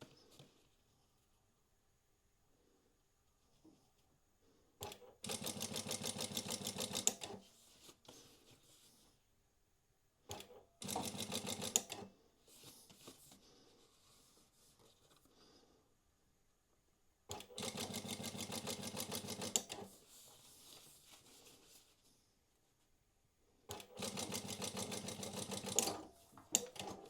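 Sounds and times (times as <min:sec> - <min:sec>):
sewing machine stitching: 0:04.8 - 0:07.4, 0:10.3 - 0:12.1, 0:17.3 - 0:19.9, 0:23.7 - 0:27.0.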